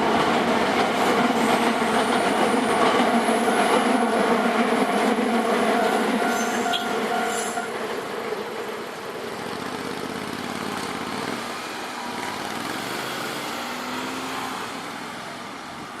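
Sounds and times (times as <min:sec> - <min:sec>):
vehicle engine and road noise: 0:09.3 - 0:16.0.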